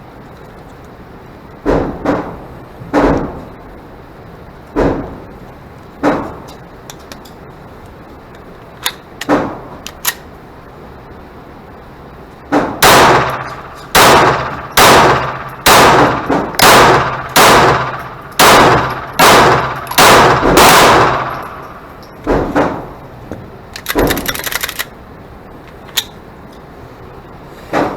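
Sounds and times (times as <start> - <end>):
pistol shots: 12.8 - 22.9.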